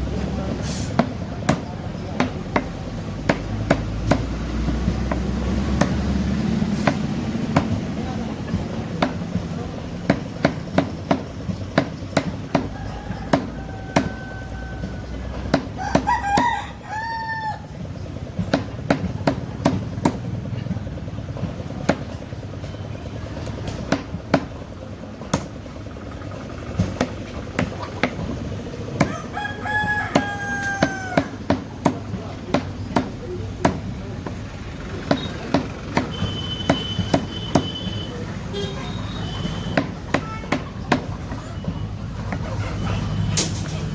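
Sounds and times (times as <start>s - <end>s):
blade chopping chicken: 0.5s - 16.6s, 18.4s - 20.3s, 23.4s - 24.6s, 26.8s - 38.0s
chickens calling: 12.5s - 19.4s, 27.6s - 32.3s, 40.7s - 43.9s
rooster crowing: 12.7s - 17.7s, 29.0s - 31.4s.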